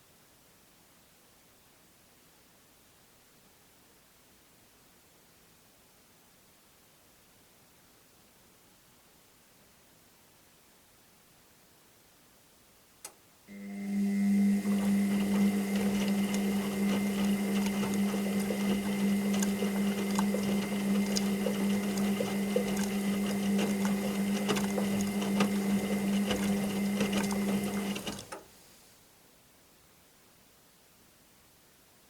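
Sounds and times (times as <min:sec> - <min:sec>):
washing machine motor hum: 0:13.5 - 0:28.4.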